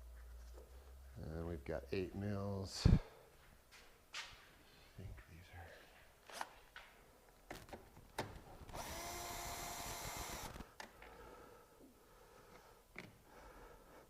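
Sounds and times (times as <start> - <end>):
cordless power driver running: 8.7 - 10.7.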